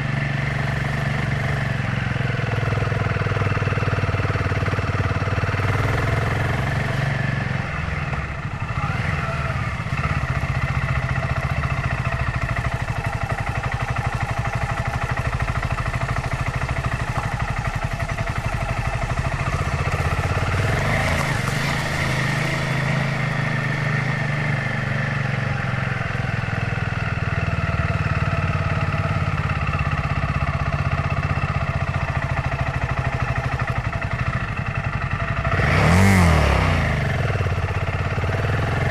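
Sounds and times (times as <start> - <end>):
wind and road noise: 0.0 - 30.1
motorcycle engine running: 0.0 - 38.9.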